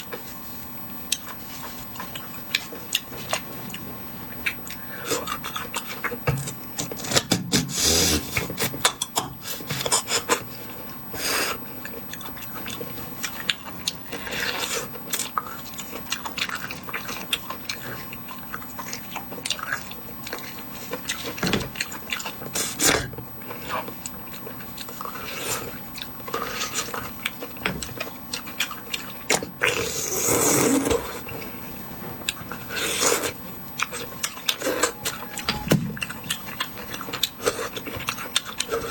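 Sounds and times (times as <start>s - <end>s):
chewing: 1.1s - 7.0s, 11.5s - 31.6s, 32.2s - 38.9s
wet slurping and sucking: 29.6s - 31.2s, 32.7s - 33.4s.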